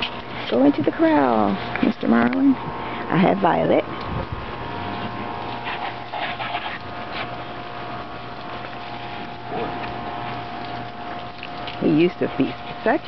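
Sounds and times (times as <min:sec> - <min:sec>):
water spraying from hose nozzle: 0:04.0 - 0:13.0.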